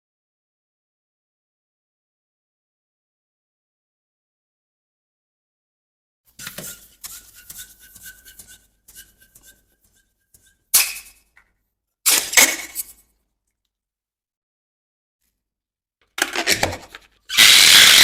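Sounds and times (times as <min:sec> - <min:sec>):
rubber balloon squeaking: 0:16.3 - 0:18.0.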